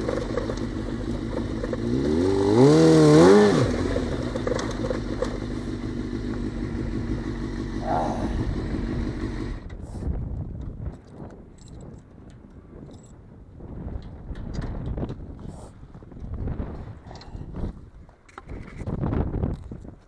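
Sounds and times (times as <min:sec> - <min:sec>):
motorcycle engine revving: 0:00.0 - 0:09.8.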